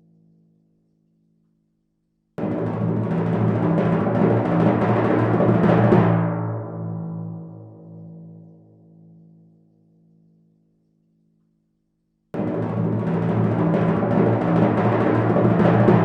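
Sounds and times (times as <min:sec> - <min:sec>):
timpani roll: 0:02.4 - 0:06.9, 0:12.4 - 0:16.0.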